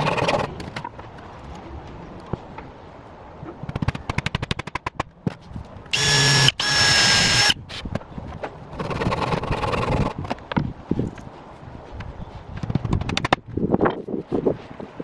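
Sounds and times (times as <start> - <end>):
power drill whining: 6.0 - 7.6.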